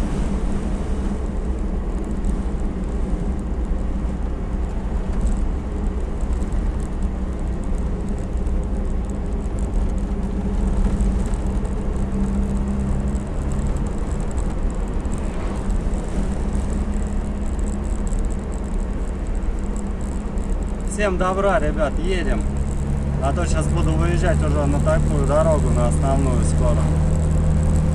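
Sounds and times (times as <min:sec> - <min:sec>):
van engine drone and road rumble: 0:00.0 - 0:27.9.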